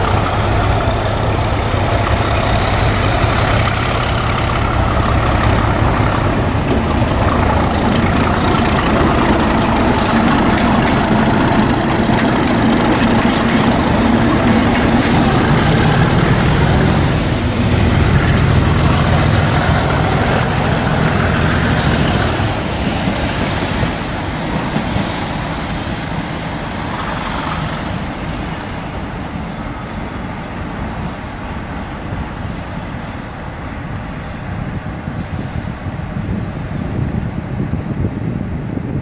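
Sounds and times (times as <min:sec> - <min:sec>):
diesel train engine rumbling: 0:00.0 - 0:39.0
hiss: 0:12.8 - 0:28.6.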